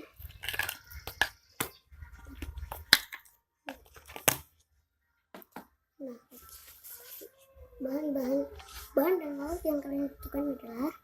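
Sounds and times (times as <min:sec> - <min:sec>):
objects clicking and knocking: 0:00.0 - 0:04.5
rustling: 0:06.3 - 0:07.6.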